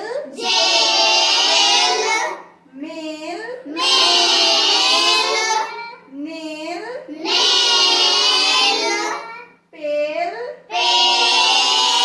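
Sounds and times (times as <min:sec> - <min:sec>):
children chanting in sing-song: 0:00.3 - 0:02.6, 0:03.7 - 0:06.1, 0:07.1 - 0:09.6, 0:10.7 - 0:12.0.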